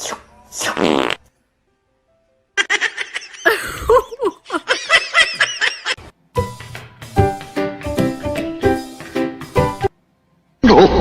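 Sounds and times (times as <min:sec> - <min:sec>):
music: 0:00.0 - 0:02.6, 0:06.1 - 0:10.6
laughter: 0:02.6 - 0:06.0.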